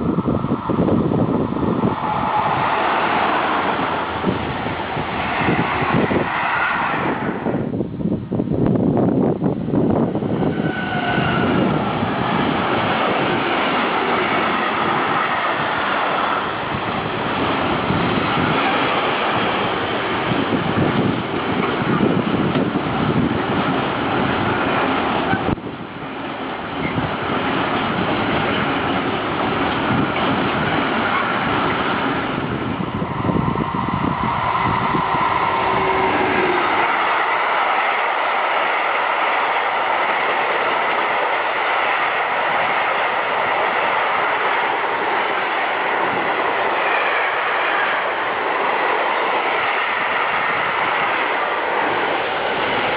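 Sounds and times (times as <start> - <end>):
train wheels on rails: 0.0 - 52.9.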